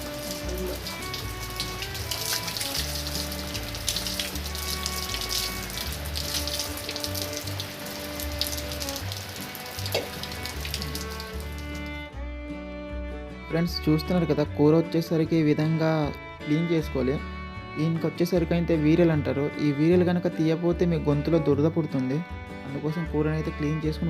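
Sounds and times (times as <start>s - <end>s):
rain hissing: 0.0s - 12.0s
background music with bass line: 0.0s - 24.0s.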